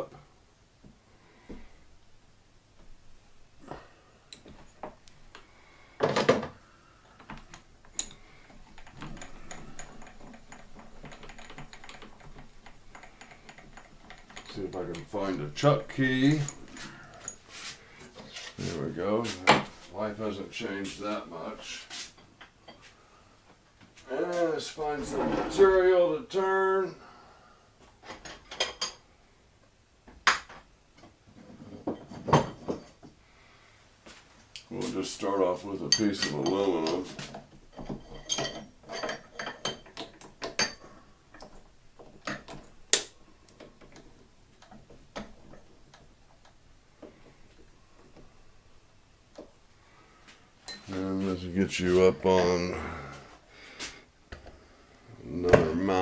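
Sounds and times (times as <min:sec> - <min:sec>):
metal tools clicking and clinking: 0:07.4 - 0:18.5, 0:35.8 - 0:46.6, 0:50.6 - 0:51.0
metal tools clattering: 0:07.9 - 0:18.7, 0:31.4 - 0:33.1, 0:35.4 - 0:42.8, 0:50.6 - 0:51.0.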